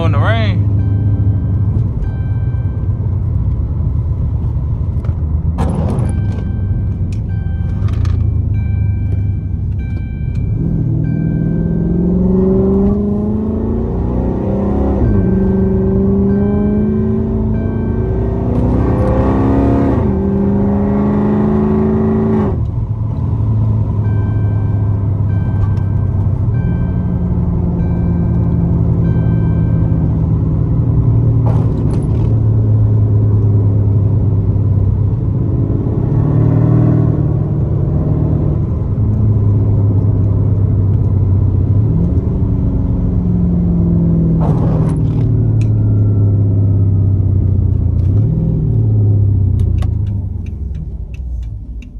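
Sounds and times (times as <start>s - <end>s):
warning chime dinging: 0.0s - 3.5s, 6.0s - 21.3s, 24.0s - 30.6s
car engine droning: 0.0s - 51.9s.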